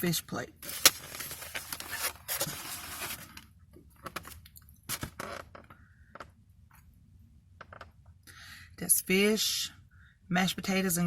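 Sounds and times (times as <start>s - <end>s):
food container rustling: 0.6s - 3.4s.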